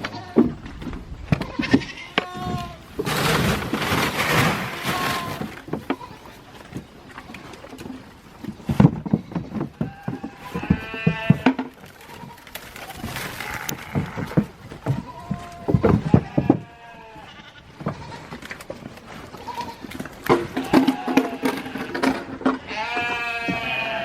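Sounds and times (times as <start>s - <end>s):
knocks and thumps: 7.5s - 16.8s, 19.9s - 23.8s
sheep bleating: 9.8s - 18.4s, 20.6s - 24.0s.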